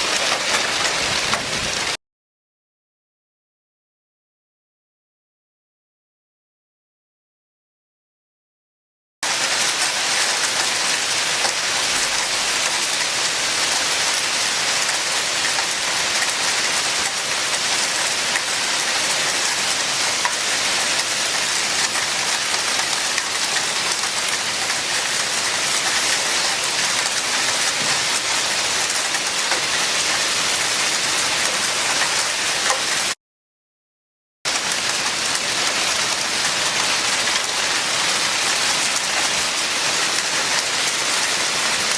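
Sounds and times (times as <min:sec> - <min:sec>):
hailstones pelting hard surfaces: 0:00.0 - 0:01.9, 0:09.3 - 0:33.2, 0:34.5 - 0:41.9.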